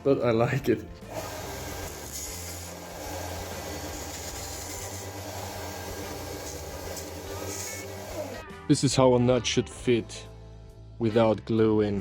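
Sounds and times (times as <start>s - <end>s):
power tool grinding bone: 1.1s - 8.4s.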